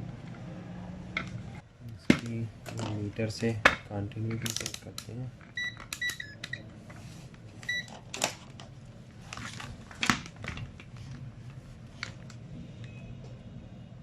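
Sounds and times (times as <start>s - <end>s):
probe clicks and handling: 4.2s - 6.6s.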